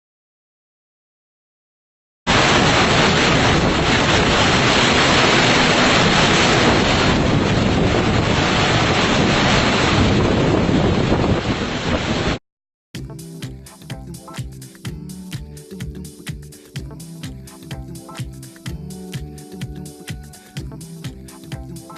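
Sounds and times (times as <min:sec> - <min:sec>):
strong wind buffeting microphone: 0:02.3 - 0:12.4.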